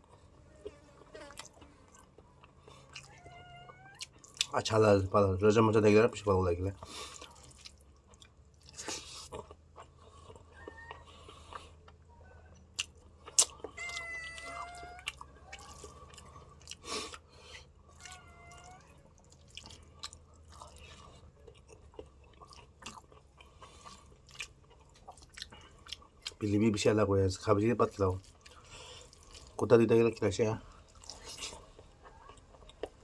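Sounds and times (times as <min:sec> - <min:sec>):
chewing noodles with mouth clicks: 0:00.0 - 0:04.6, 0:06.8 - 0:26.5, 0:27.8 - 0:29.7, 0:30.6 - 0:33.0
cat meowing: 0:03.0 - 0:04.1, 0:10.5 - 0:11.0, 0:13.7 - 0:15.8, 0:18.0 - 0:19.0.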